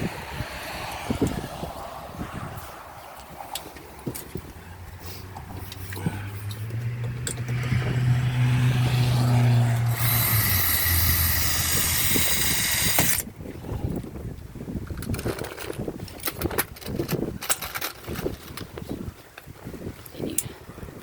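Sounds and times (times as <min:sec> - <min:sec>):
power drill grinding: 0:08.8 - 0:13.2.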